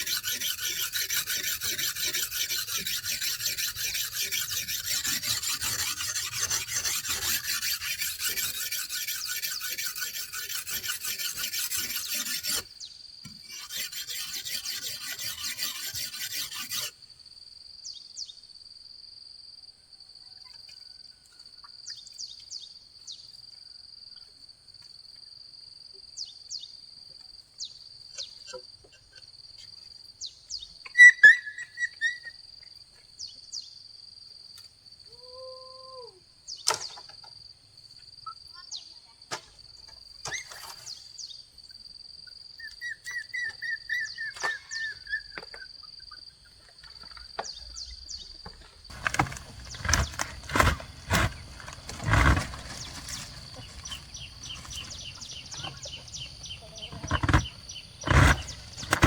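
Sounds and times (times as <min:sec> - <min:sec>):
rhythmic rasping scraping strokes: 0:00.0 - 0:12.7, 0:13.4 - 0:16.9, 0:48.9 - 0:59.0.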